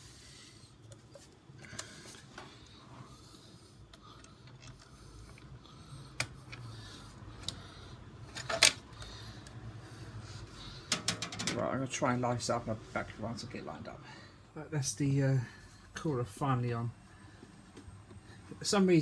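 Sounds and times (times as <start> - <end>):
small clicks and scrapes of bracket: 7.4 - 7.6, 8.3 - 9.6.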